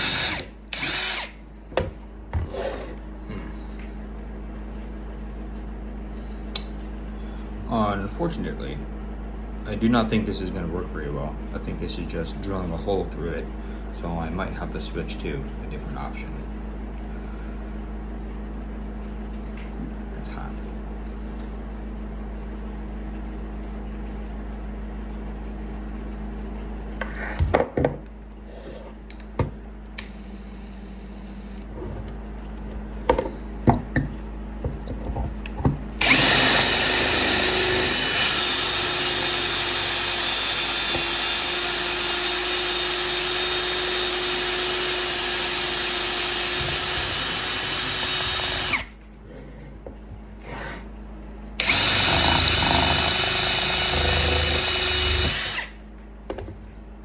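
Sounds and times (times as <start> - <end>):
electric drill boring wood: 0.0 - 1.4, 36.0 - 49.0, 51.6 - 55.8.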